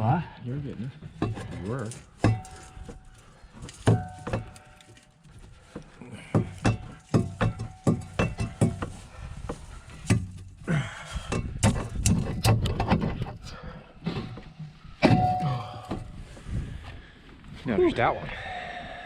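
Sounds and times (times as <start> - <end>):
metal knocks and clanks of tools: 1.0 - 13.5, 14.1 - 16.2.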